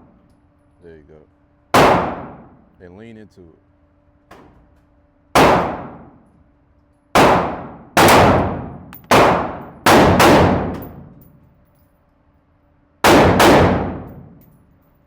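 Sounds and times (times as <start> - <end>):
pistol shots echoing: 1.8 - 2.5, 5.4 - 6.1, 7.2 - 11.1, 13.0 - 14.3.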